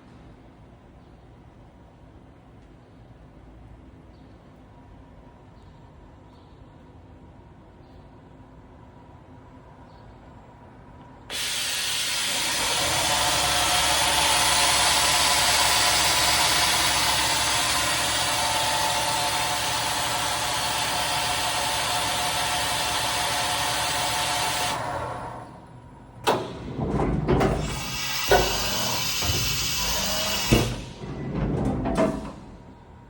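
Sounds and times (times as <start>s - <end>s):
sharp mechanical clunk: 26.2s - 32.7s
machining center whining hiss: 27.4s - 31.3s.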